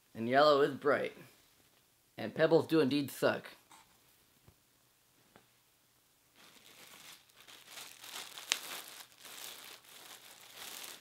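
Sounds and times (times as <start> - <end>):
packaging crinkling and rustling: 6.4 - 11.0.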